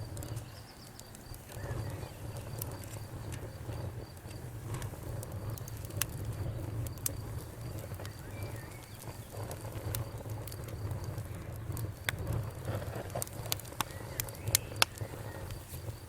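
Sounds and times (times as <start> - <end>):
cricket trilling: 0.0 - 16.0
wood fire crackling and popping: 0.0 - 16.0
bird chirp: 0.1 - 3.4, 7.7 - 9.4, 13.8 - 16.0.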